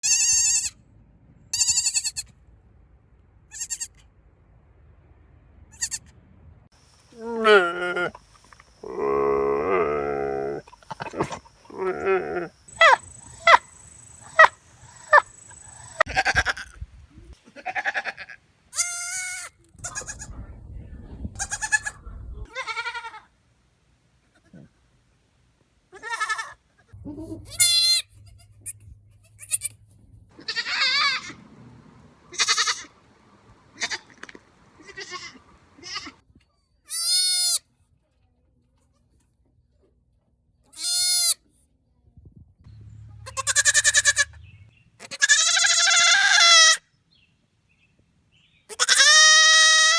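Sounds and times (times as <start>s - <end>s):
goats bleating and screaming: 7.1s - 8.2s, 8.8s - 16.7s, 17.5s - 20.3s, 26.0s - 26.6s, 27.2s - 28.7s, 30.4s - 33.0s, 33.7s - 36.2s, 43.2s - 44.4s, 45.0s - 46.8s, 48.7s - 49.9s.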